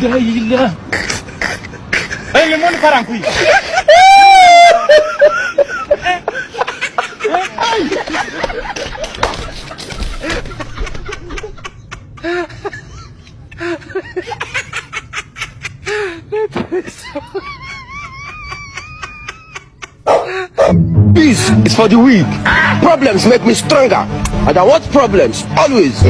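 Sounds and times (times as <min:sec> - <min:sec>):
people snickering and laughing: 0:00.8 - 0:20.8
wavering pitched sound: 0:20.6 - 0:22.7.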